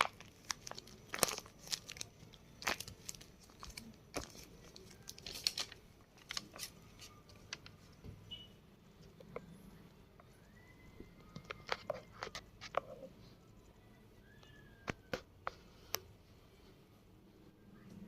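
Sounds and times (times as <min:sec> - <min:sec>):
packaging crinkling and tearing: 0:00.0 - 0:07.6.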